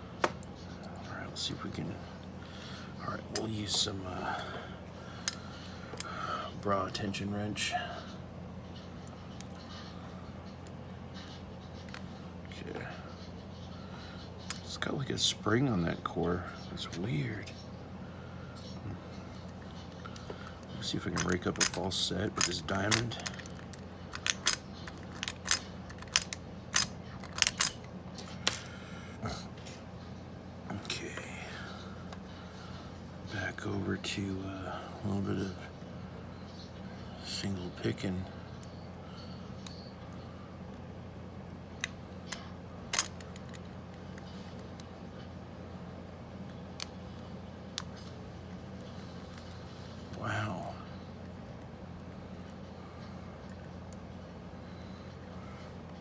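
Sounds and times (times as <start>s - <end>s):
low steady hum: 0.0s - 56.0s
lock pick clicking in padlock: 24.1s - 27.8s, 43.0s - 43.6s.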